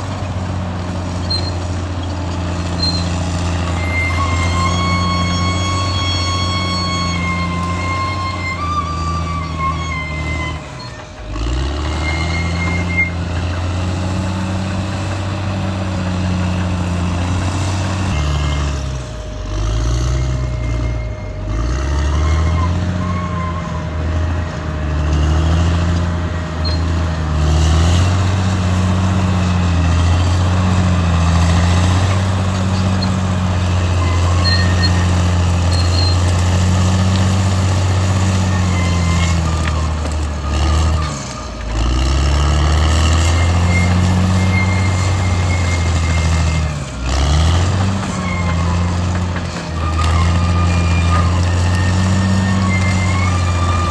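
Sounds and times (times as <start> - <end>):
bulldozer diesel engine under load: 0.0 - 53.9
brief high squeaks: 1.2 - 13.6, 20.0 - 23.9, 26.6 - 27.0, 31.9 - 36.4, 38.1 - 41.4, 43.1 - 46.8, 47.8 - 53.9.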